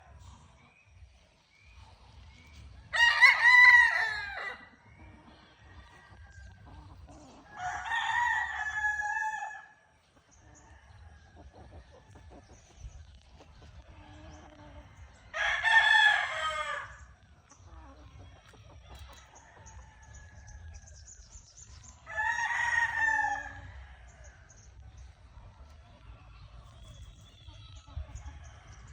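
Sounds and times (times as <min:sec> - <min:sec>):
rooster crowing: 0:02.9 - 0:04.7, 0:07.6 - 0:09.7.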